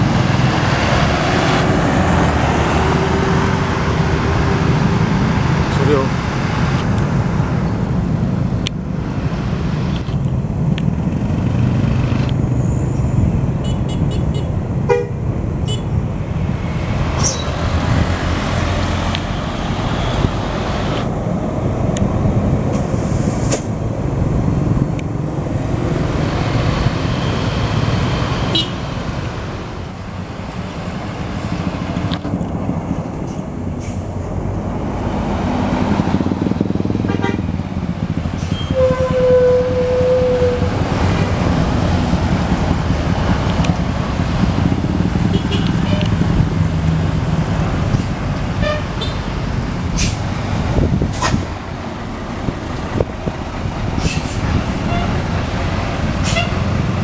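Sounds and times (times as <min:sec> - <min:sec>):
heavy vehicle engine rumbling: 0:00.0 - 0:57.0
short horn toots: 0:28.5 - 0:28.9, 0:38.4 - 0:40.8, 0:56.2 - 0:56.6.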